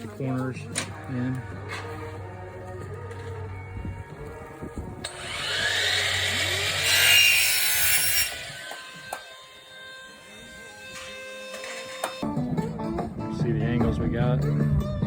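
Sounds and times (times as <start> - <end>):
power saw cutting: 5.0 - 12.2.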